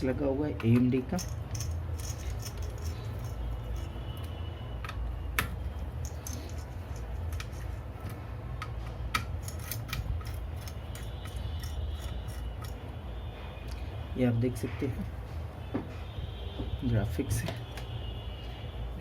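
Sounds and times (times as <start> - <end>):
tools and parts clicking on workbench: 0.6 - 4.0, 4.8 - 12.8.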